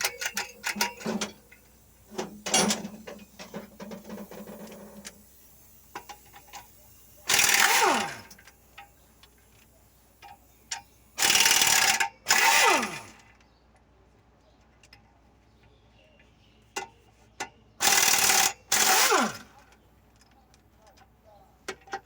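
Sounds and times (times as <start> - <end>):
tools and parts clicking: 0.0 - 13.5.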